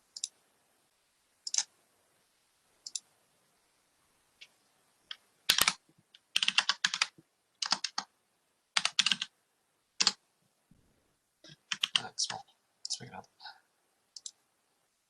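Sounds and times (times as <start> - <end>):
keyboard typing: 1.5 - 1.7, 2.8 - 3.1, 5.1 - 8.1, 8.8 - 9.3, 10.0 - 10.2, 11.4 - 13.0, 14.2 - 14.4.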